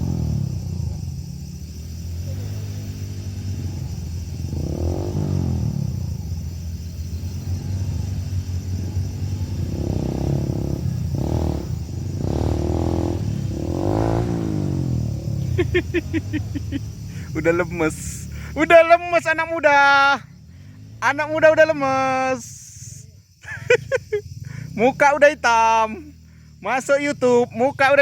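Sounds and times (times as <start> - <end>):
dirt bike engine revving: 0.0 - 22.4.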